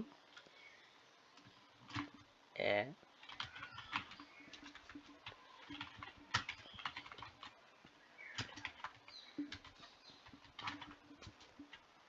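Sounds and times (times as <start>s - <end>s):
keyboard keystrokes: 3.2s - 7.5s, 8.4s - 11.8s.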